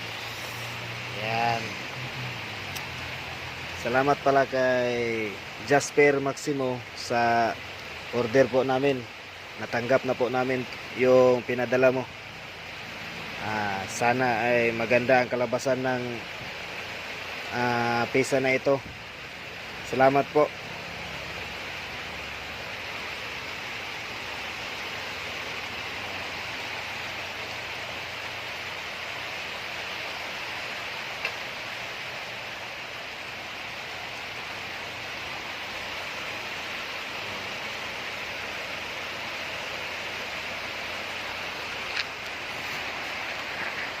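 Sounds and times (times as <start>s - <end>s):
steady rain falling: 0.0s - 44.0s
faint ticks: 31.2s - 31.4s.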